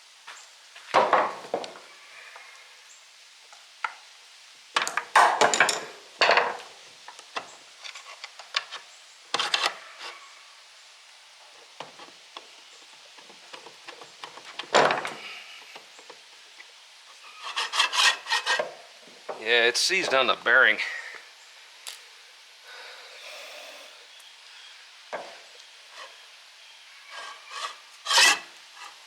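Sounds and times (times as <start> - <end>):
hand tools clanking on metal: 4.9 - 6.6.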